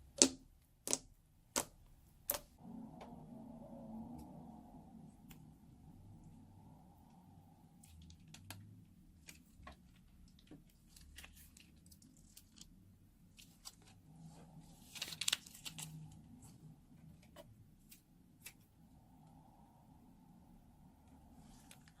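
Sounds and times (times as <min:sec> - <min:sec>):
sticky slime clicks and crackles: 0:00.2 - 0:02.5.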